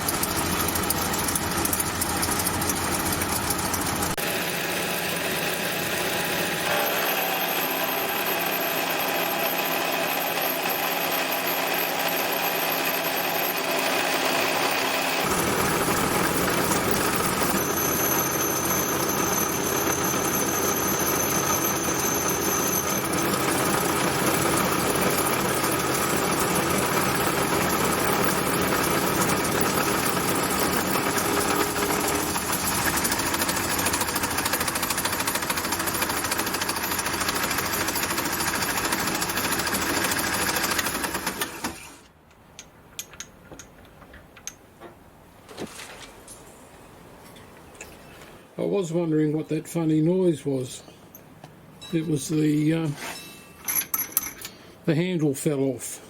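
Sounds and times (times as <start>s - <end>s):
milling machine cutting metal: 0.0s - 42.0s.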